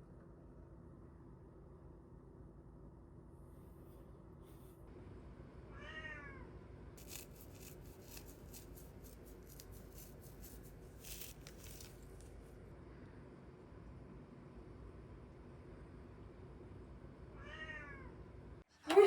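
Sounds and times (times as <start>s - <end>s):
cat meowing: 5.7s - 6.5s, 17.4s - 18.1s.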